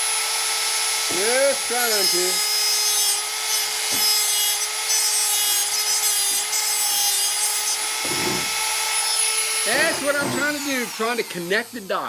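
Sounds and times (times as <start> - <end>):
rotary tool running: 8.0 - 11.1
scratchy cutting hiss: 9.7 - 11.9.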